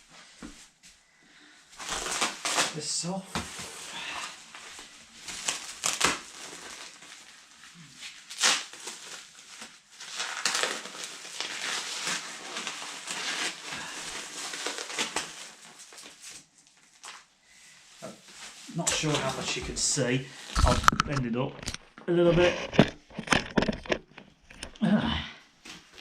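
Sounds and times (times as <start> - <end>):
packaging rustling and crinkling: 1.7 - 21.8, 22.4 - 24.8
packaging ripping: 1.8 - 17.3.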